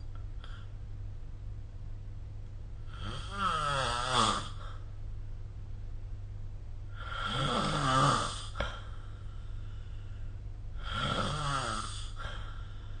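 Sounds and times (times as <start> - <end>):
low steady hum: 0.0 - 13.0
person snoring: 2.9 - 4.8, 6.9 - 9.0, 10.8 - 13.0.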